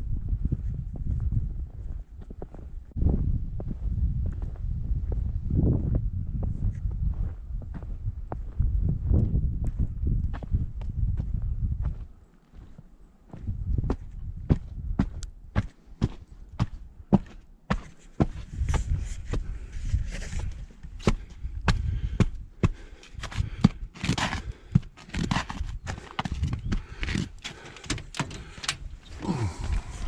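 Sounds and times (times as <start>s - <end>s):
footsteps in snow boots: 23.1s - 27.8s.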